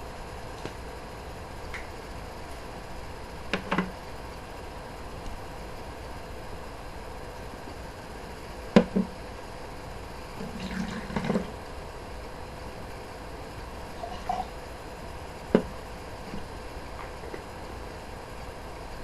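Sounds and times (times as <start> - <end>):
juice pouring: 10.4 - 11.6, 14.0 - 14.5.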